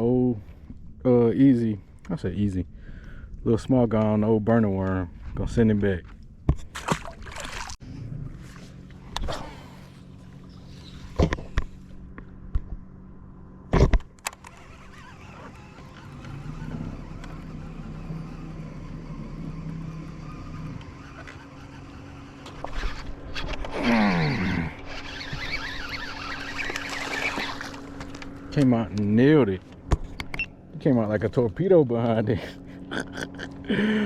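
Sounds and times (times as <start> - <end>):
electric trolling motor humming: 7.8 - 34.0.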